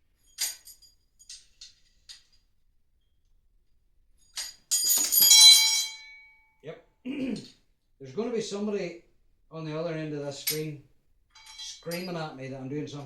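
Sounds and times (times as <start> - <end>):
ringing metal clatter: 4.3 - 6.3, 11.3 - 12.3
light metallic clinks: 11.3 - 12.2.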